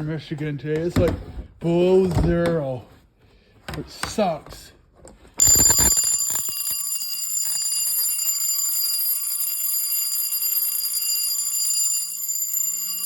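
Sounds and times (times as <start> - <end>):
fire alarm bell ringing: 5.4 - 13.0.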